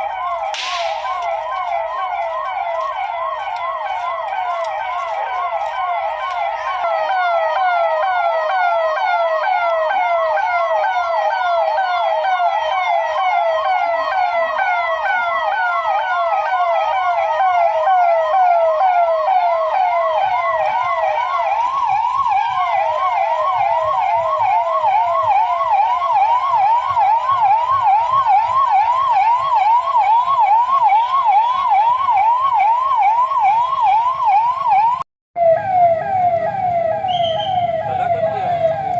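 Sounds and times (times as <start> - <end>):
police siren yelping: 0.0 - 38.9.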